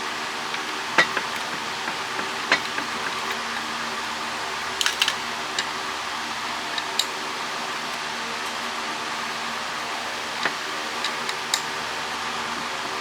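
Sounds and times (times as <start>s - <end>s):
steady hum: 0.0s - 13.0s
small metal parts clicking: 0.3s - 7.2s, 10.3s - 11.8s.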